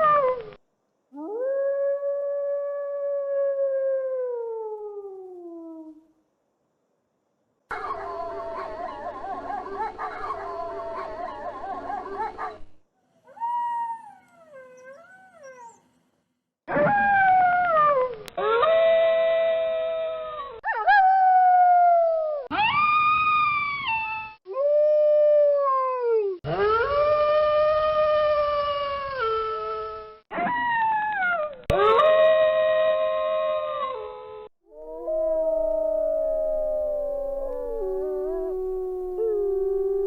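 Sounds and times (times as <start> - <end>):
wolves howling: 7.7 - 12.6, 13.3 - 15.8, 34.7 - 40.0.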